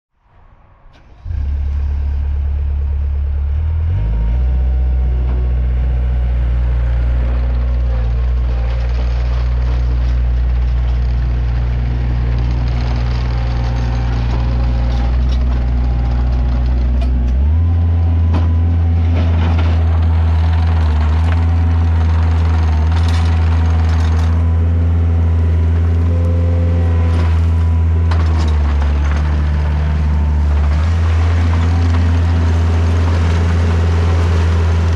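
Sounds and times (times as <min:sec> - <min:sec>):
skid steer diesel engine running: 0:00.9 - 0:34.9
machine clanking and clatter: 0:07.1 - 0:24.6, 0:27.0 - 0:34.9.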